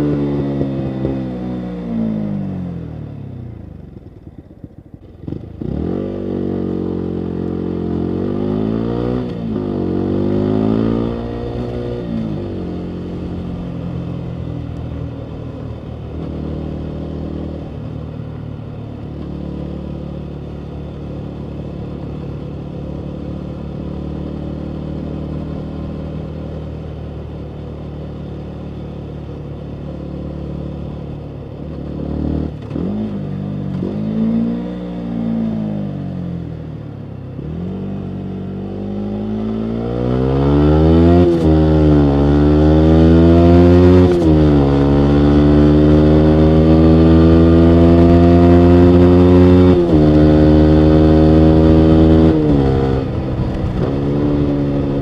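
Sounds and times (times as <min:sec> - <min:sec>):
motorcycle engine revving: 0:00.0 - 0:55.0
exhaust crackles: 0:51.4 - 0:55.0.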